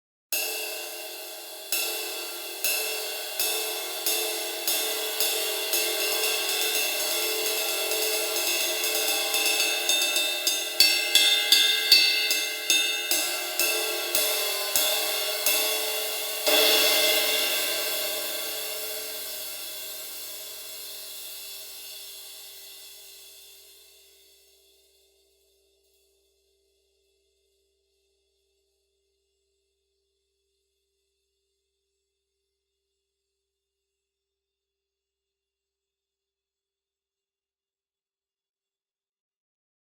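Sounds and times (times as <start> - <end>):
sizzle cymbal struck: 0.4 - 24.2.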